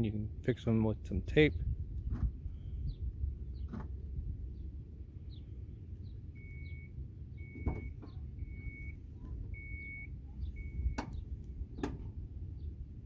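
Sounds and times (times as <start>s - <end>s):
faint bird chirps: 5.2s - 9.0s
car warning chime beeping: 6.3s - 11.2s.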